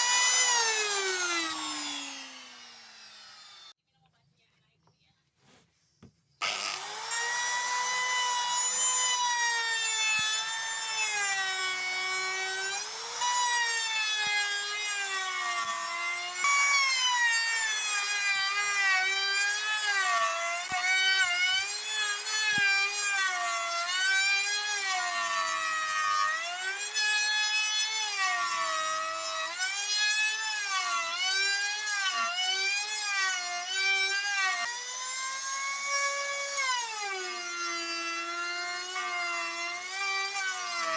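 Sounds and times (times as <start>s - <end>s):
electric drill whining: 0.0s - 3.8s, 6.4s - 40.9s.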